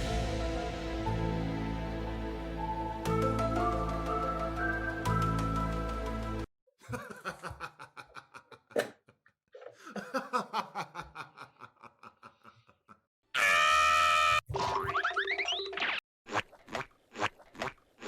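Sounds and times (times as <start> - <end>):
background music: 0.0 - 6.5.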